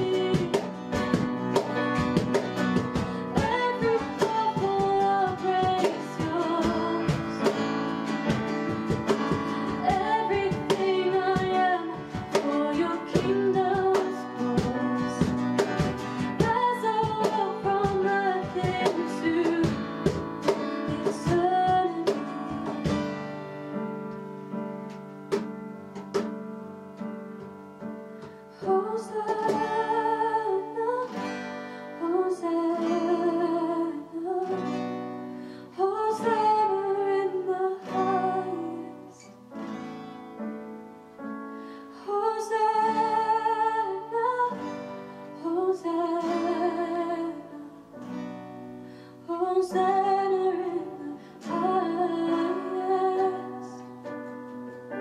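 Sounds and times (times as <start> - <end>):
person singing: 0.0 - 1.8, 3.0 - 8.4, 9.0 - 23.1, 28.6 - 34.7, 35.7 - 39.3, 49.3 - 54.0
acoustic guitar strumming: 0.0 - 33.8.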